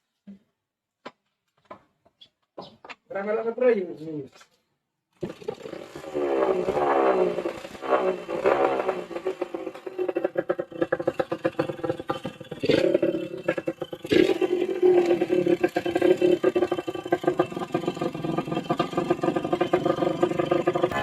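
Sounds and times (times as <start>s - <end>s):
two-stroke motorcycle engine revving: 5.2s - 21.0s.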